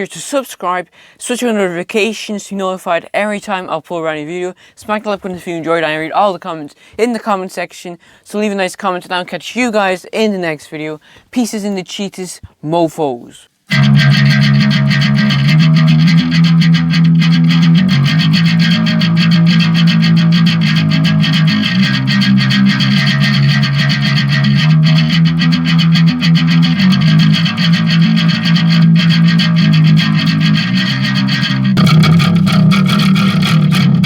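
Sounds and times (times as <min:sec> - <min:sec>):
distorted electric bass guitar: 0:13.7 - 0:34.0.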